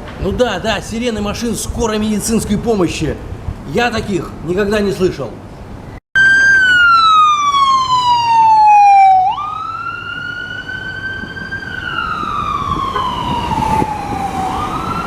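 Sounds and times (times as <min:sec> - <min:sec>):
ambulance siren wailing: 0:06.2 - 0:15.0.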